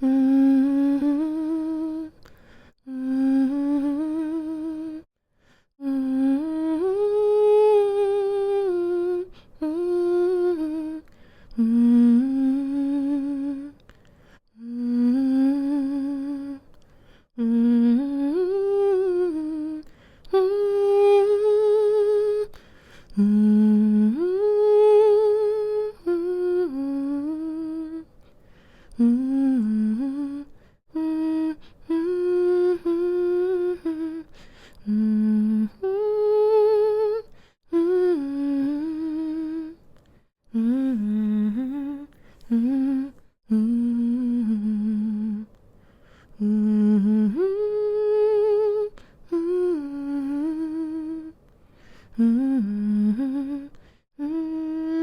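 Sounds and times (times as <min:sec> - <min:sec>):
woman humming a lullaby: 0:02.8 - 0:05.1, 0:14.6 - 0:16.7, 0:23.2 - 0:28.1, 0:29.0 - 0:39.8, 0:52.2 - 0:55.0.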